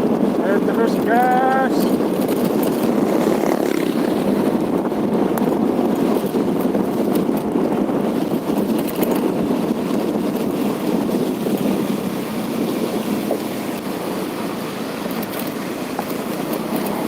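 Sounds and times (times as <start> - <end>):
wind buffeting microphone: 0.0 - 17.0
vehicle rushing noise: 0.6 - 5.8.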